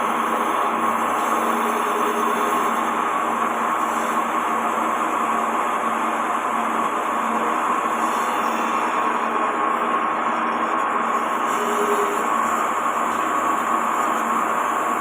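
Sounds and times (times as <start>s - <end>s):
lathe machining noise: 0.0s - 15.0s
steady motor hum: 0.0s - 15.0s.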